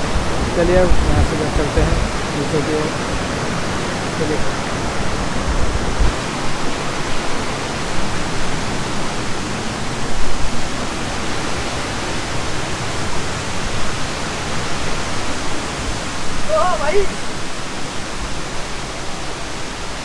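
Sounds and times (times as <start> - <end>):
waterfall roaring: 0.0 - 20.0.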